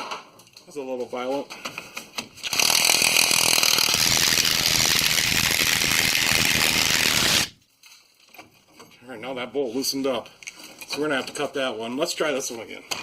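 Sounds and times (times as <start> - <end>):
impact wrench running: 2.4 - 7.5.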